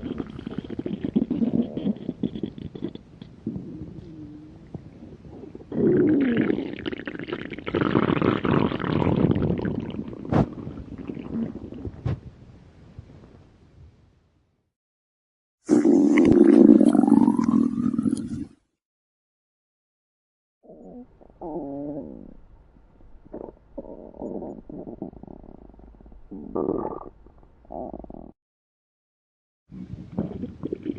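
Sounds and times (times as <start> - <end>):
stomach growling: 0.0 - 12.3, 15.7 - 18.6, 23.2 - 28.4, 29.7 - 30.9.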